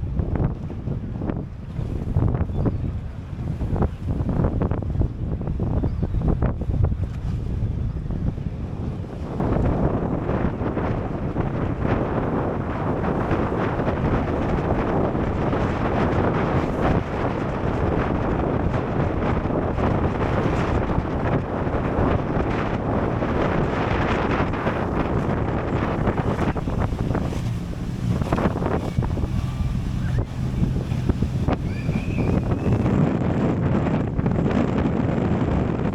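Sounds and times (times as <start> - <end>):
wind buffeting microphone: 0.0 - 35.9
sea washing: 8.4 - 35.9.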